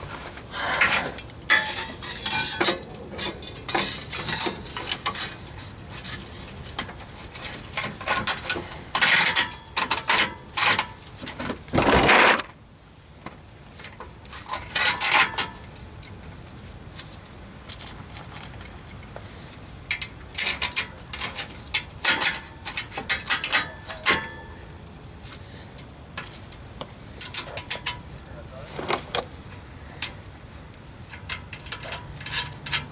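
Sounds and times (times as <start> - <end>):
metal tools clinking: 0.7 - 10.9, 17.7 - 19.0, 19.9 - 24.6, 31.1 - 32.9.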